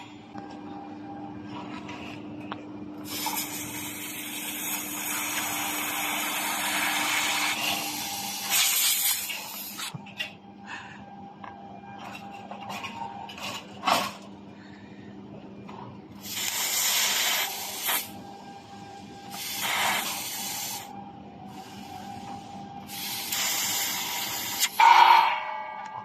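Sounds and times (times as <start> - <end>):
laser machine hum: 0.0 - 13.3, 14.6 - 26.0
gas hissing: 3.0 - 9.9, 16.2 - 18.2, 19.3 - 21.0, 21.6 - 24.9.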